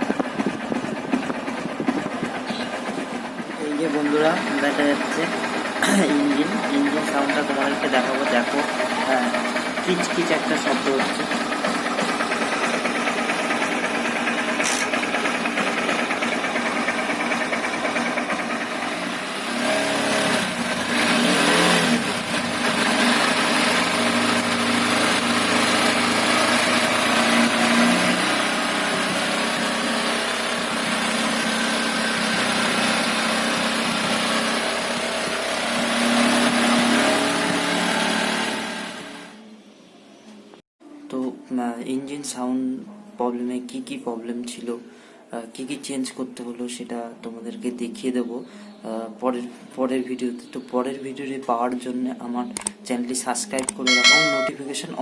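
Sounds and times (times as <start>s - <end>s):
repetitive engine ticking noise: 0.0s - 19.2s
motorcycle engine running: 0.0s - 38.2s.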